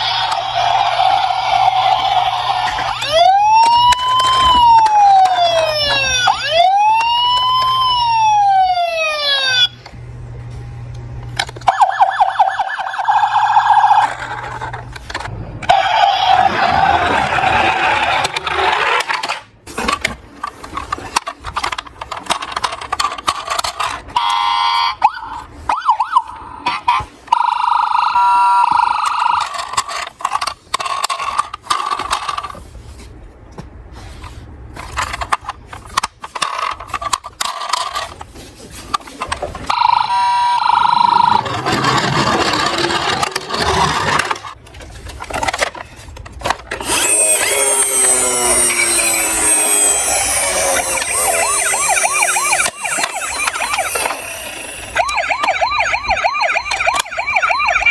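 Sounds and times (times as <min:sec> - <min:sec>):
plastic toy cars clattering: 0:00.0 - 0:08.1, 0:12.8 - 0:25.4, 0:26.6 - 0:33.2, 0:34.0 - 0:55.8
toy siren pulsing: 0:00.0 - 0:09.8, 0:11.6 - 0:14.7, 0:15.7 - 0:18.8, 0:23.7 - 0:29.9, 0:39.7 - 0:44.0, 0:46.8 - 0:57.9.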